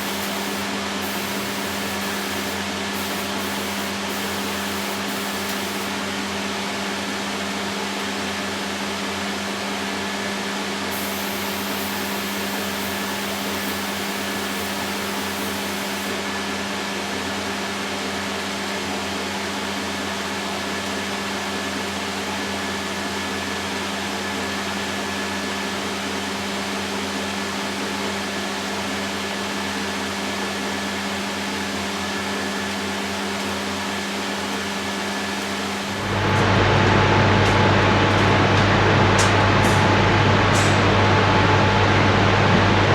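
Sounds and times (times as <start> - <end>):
electric motor humming with hiss: 0.0 - 6.0, 10.9 - 16.2.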